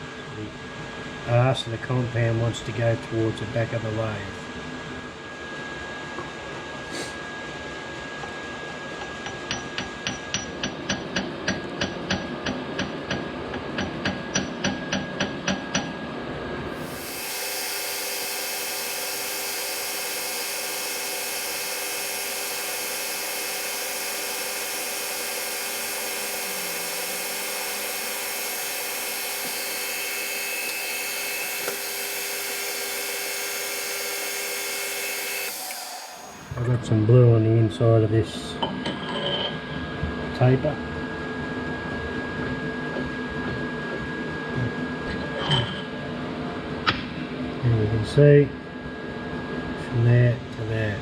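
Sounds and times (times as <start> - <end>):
metal lathe running: 16.8 - 36.8.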